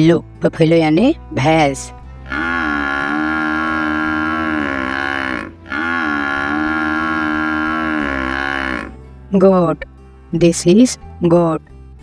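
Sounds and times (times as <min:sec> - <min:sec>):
water buffalo lowing: 0:00.0 - 0:12.0.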